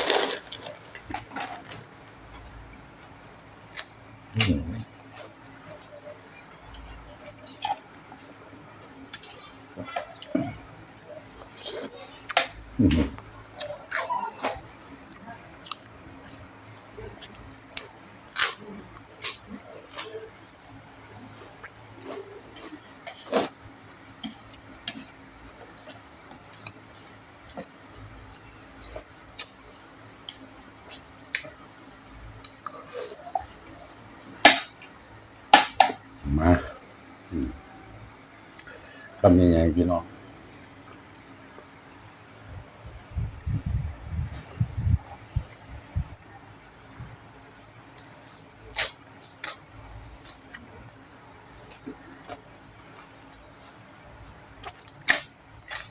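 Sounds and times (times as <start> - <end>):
sharp eating crunches: 0.0 - 0.8, 3.4 - 6.6, 17.2 - 20.8, 47.1 - 53.5, 54.6 - 55.9
chewing: 10.0 - 23.6.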